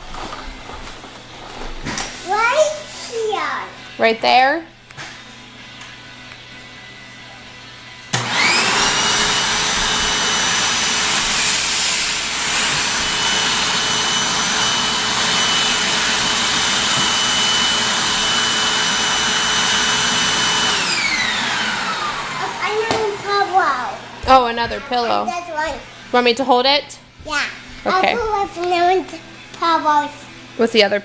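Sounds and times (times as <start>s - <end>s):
vacuum cleaner motor whine: 5.0s - 26.5s.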